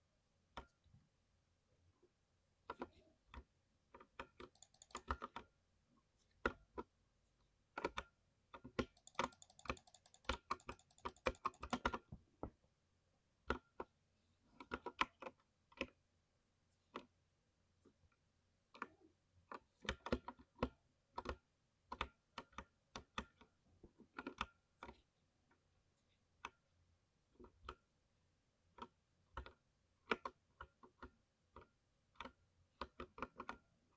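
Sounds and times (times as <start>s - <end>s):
mechanical keyboard typing: 4.5s - 5.4s, 8.9s - 12.0s.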